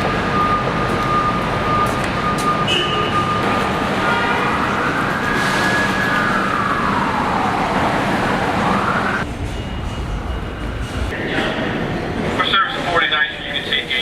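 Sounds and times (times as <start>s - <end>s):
emergency vehicle siren wailing: 0.0s - 10.7s
traffic noise: 0.0s - 14.0s.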